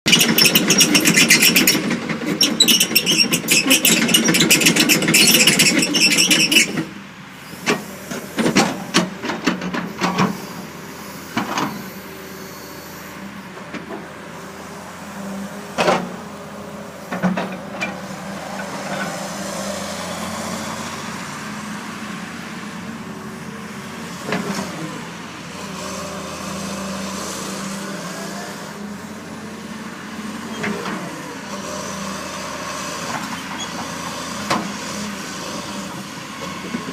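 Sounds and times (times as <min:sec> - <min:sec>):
excavator diesel engine running: 0:00.1 - 0:36.9.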